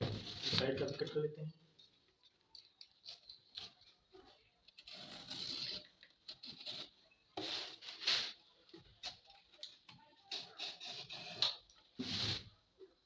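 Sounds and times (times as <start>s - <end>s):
paper being cut and crinkling: 3.0s - 12.4s.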